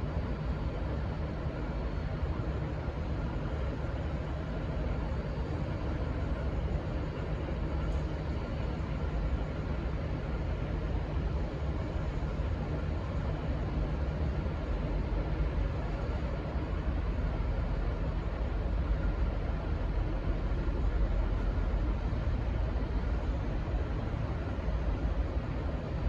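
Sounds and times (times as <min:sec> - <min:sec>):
diesel locomotive rumble: 0:11.1 - 0:26.0.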